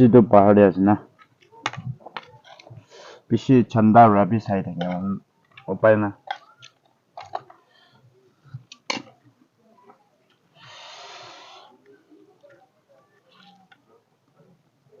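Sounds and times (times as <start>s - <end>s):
breathy rush of air: 10.6s - 11.8s.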